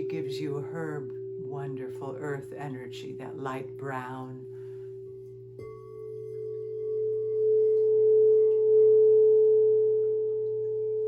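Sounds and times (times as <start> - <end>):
singing bowl ringing: 0.0 - 11.0.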